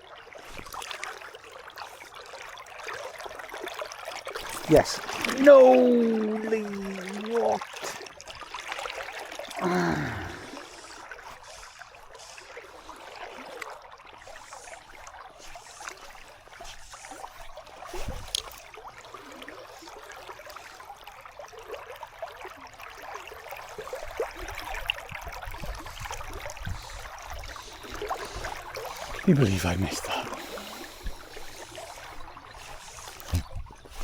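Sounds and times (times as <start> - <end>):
river water flowing: 0.0 - 34.0
man groaning: 5.4 - 7.3, 9.6 - 10.6.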